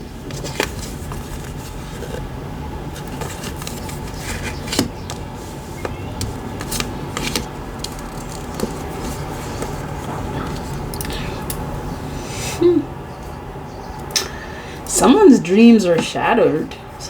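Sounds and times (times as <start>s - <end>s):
cards snapping and rustling: 0.2s - 2.2s, 2.9s - 11.2s.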